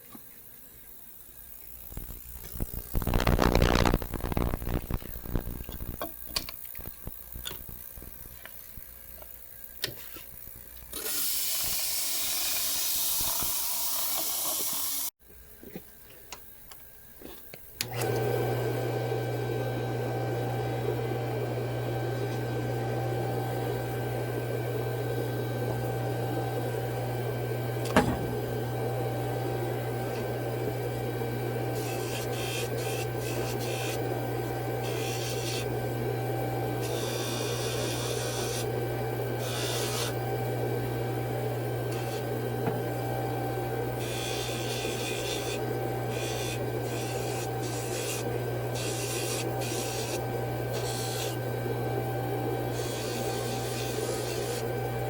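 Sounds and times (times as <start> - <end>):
machine hum: 17.8 - 55.0.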